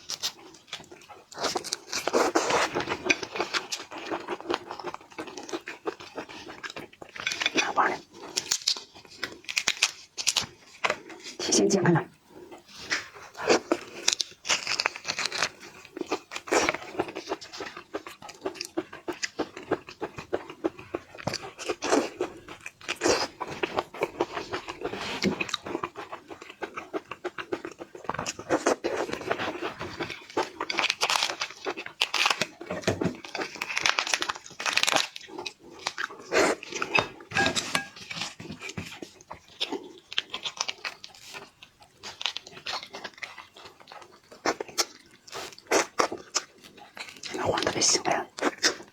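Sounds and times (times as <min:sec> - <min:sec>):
chewing close to microphone: 0:00.0 - 0:11.5, 0:12.3 - 0:48.9.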